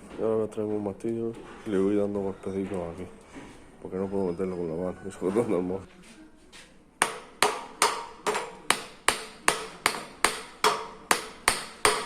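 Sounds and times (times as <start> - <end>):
hammer tapping on metal: 7.0 - 12.0.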